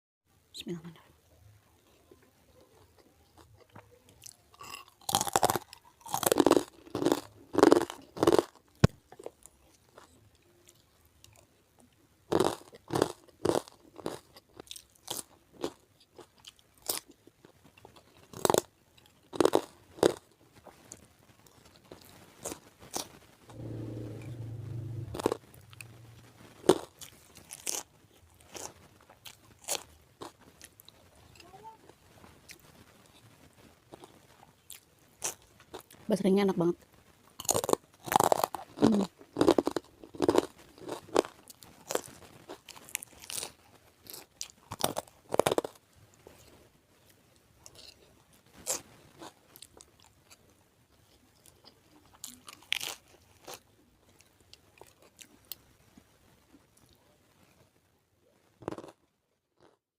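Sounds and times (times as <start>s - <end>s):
crunchy biting and chewing: 3.0s - 10.1s, 12.3s - 17.2s, 17.8s - 25.9s, 26.5s - 31.4s, 37.3s - 46.5s, 47.6s - 50.4s, 51.4s - 53.6s, 58.6s - 59.0s
low steady sound: 23.5s - 26.9s.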